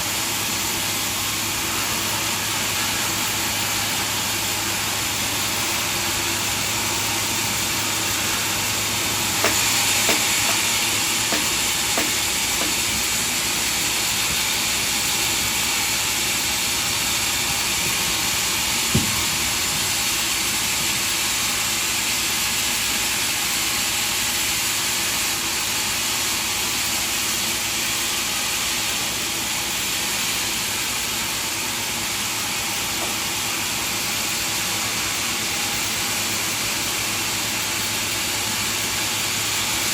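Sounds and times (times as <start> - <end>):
sawmill machinery hissing: 0.0 - 39.9
short knocks: 9.4 - 10.7, 11.3 - 13.0.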